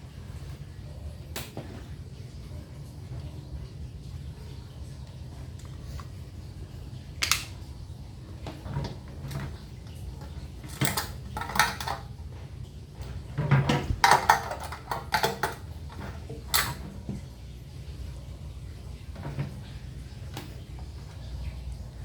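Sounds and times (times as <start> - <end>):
metal tools clinking: 10.6 - 12.0, 13.9 - 16.8.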